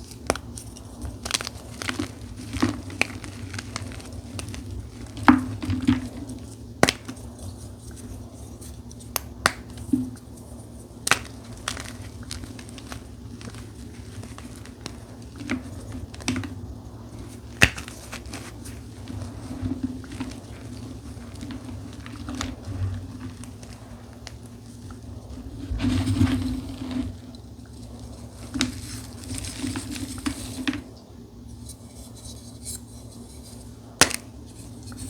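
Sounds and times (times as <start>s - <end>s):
chalk crunching by hand: 0.0s - 16.3s, 17.1s - 24.9s
steady low hum: 0.0s - 35.0s.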